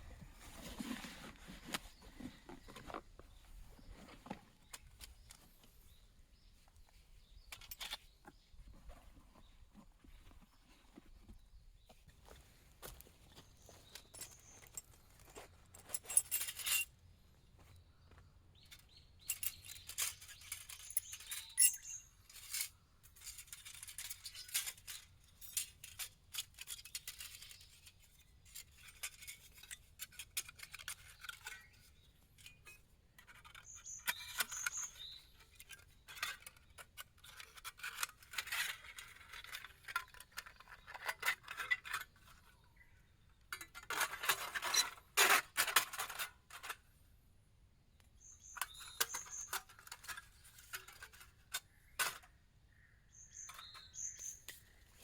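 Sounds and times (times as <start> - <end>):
small objects being handled: 48.2 - 52.4.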